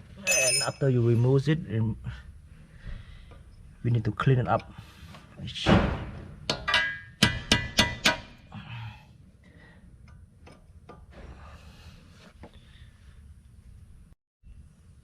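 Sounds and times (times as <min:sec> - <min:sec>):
metal tool clinking on metal: 0:00.2 - 0:00.9.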